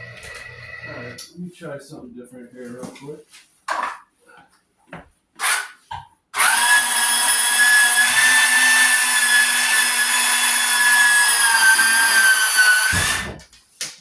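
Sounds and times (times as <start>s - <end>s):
power tool motor whining: 0.0s - 1.2s, 6.4s - 13.4s.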